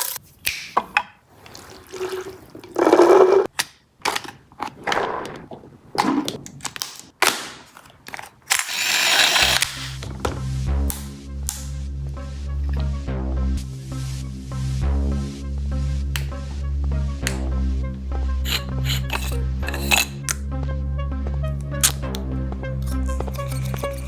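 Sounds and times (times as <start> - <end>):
toy gun clicking and rasping: 8.1 - 10.0
electronic music with a beat: 10.6 - 24.0.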